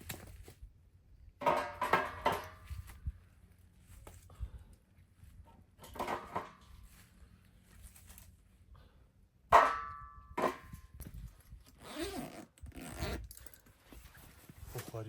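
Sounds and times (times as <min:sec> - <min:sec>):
sharp metallic clanks: 0:09.5 - 0:10.8.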